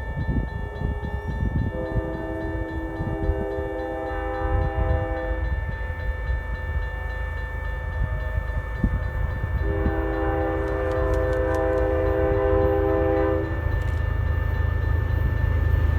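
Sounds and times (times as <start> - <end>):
crossing bell ringing: 0.0 - 15.9
locomotive engine rumble: 0.0 - 15.9
locomotive air horn: 0.6 - 5.5, 9.6 - 14.0.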